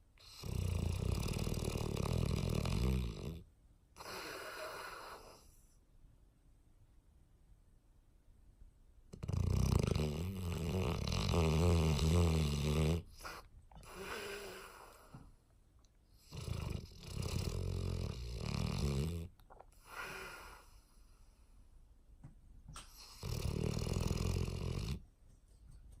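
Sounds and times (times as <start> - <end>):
dog snoring: 0.2 - 5.6, 9.1 - 15.2, 16.2 - 21.0, 22.9 - 25.0.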